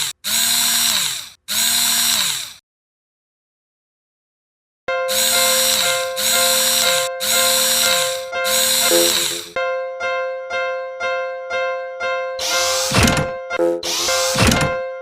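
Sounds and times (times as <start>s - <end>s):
harsh horn blasts: 13.5s - 14.8s.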